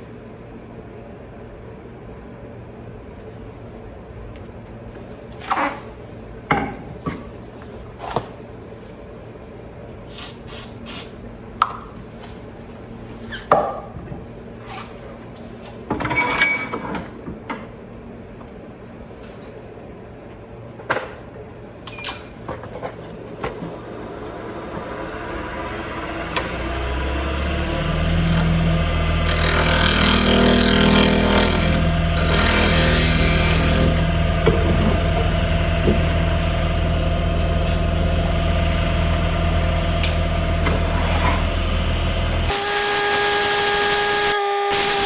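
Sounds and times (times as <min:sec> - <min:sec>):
steady low hum: 0:23.0 - 0:45.0.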